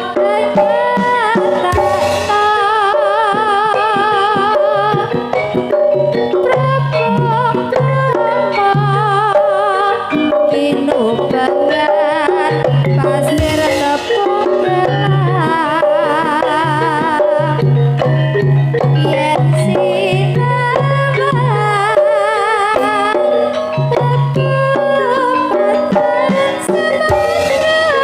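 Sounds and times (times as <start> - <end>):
gamelan-style instruments: 0.0 - 28.0
hand drum beating: 0.0 - 28.0
wavering vibrato melody: 0.0 - 28.0.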